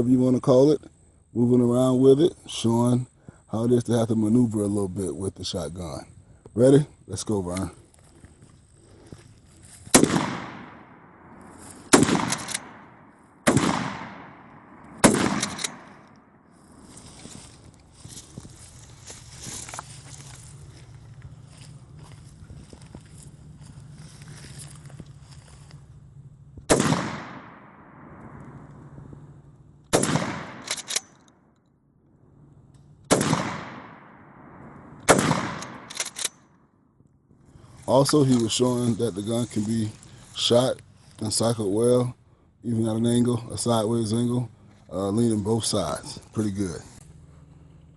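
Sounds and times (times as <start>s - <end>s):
shotgun shots with echo: 9.9s - 16.1s, 26.7s - 28.5s, 29.9s - 30.9s, 33.1s - 36.0s
quick pump action clicks: 12.0s - 12.7s, 15.0s - 15.8s, 30.6s - 31.3s, 35.6s - 36.4s.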